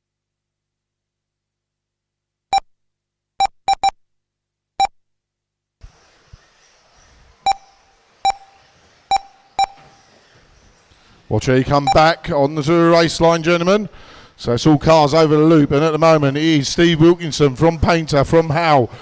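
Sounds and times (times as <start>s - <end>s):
short electronic beeps: 3.4s - 4.0s, 7.4s - 9.8s, 11.8s - 12.1s.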